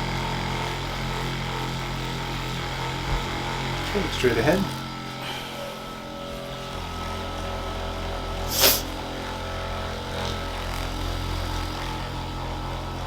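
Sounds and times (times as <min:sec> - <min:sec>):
electric massager buzzing: 0:00.0 - 0:13.0
short sharp burst: 0:08.5 - 0:08.9.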